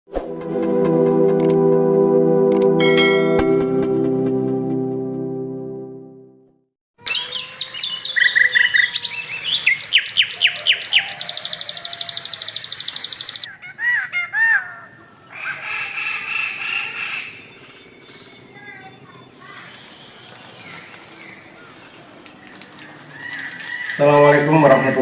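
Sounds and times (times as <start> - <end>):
musical chord: 0.3 - 6.6
birds singing: 7.0 - 25.0.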